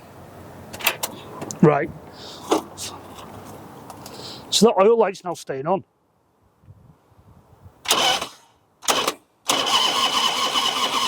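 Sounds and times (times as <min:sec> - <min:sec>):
starter cranking motorcycle engine: 0:07.9 - 0:11.0
starter whine: 0:07.9 - 0:11.0.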